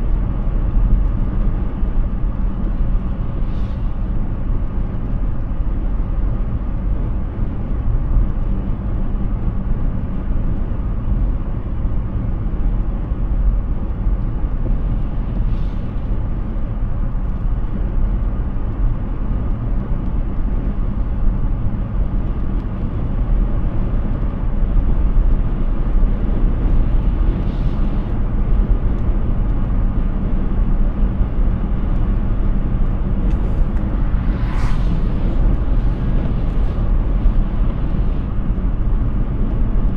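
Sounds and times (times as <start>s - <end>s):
road and tyre rumble: 0.0s - 39.9s
brief hisses: 33.3s - 36.9s.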